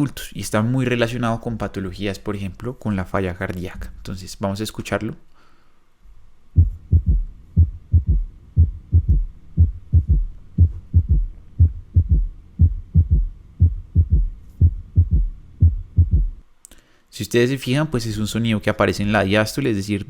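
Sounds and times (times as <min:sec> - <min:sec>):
heart gallop thuds: 0:06.6 - 0:16.4.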